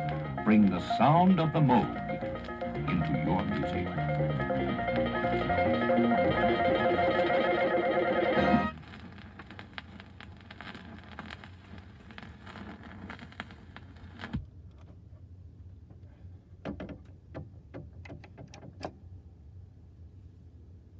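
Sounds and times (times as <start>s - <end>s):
vinyl surface hiss and crackle: 0.0s - 15.2s.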